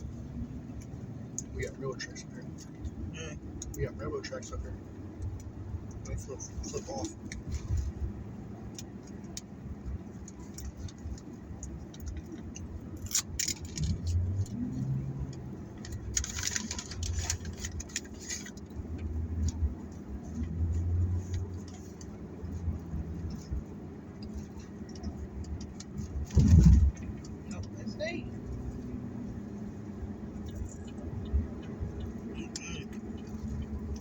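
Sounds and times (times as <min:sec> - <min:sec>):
low steady hum inside car: 0:00.0 - 0:34.0
rustling and crinkling handling noises: 0:15.8 - 0:18.8.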